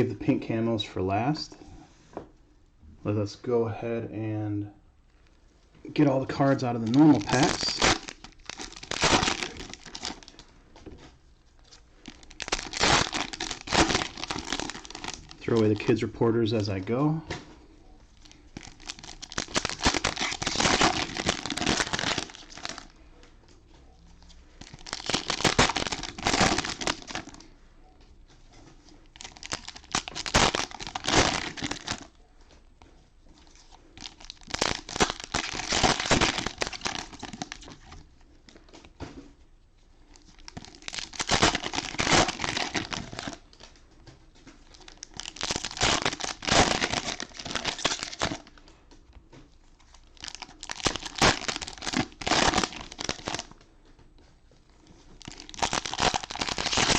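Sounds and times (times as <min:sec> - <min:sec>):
cellophane wrappers crinkling: 0:05.9 - 0:10.5, 0:11.5 - 0:16.9, 0:18.1 - 0:23.0, 0:24.1 - 0:27.5, 0:28.5 - 0:32.2, 0:33.3 - 0:38.9, 0:40.0 - 0:56.9.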